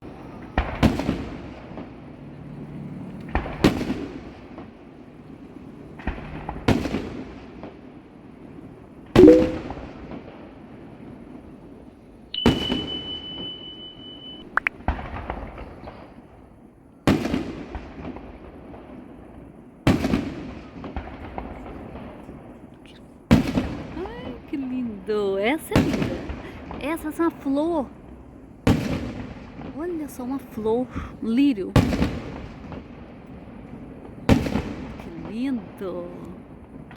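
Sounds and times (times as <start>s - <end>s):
fireworks bangs with crackling: 0.0s - 2.2s, 3.3s - 9.1s, 14.8s - 22.6s, 23.2s - 27.8s, 28.6s - 36.9s
high whistle: 9.2s - 9.7s, 12.4s - 14.5s.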